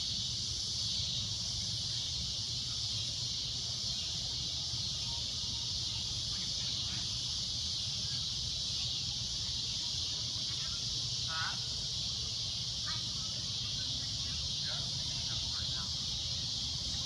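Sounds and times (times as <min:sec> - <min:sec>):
cicadas droning: 0:00.0 - 0:17.0.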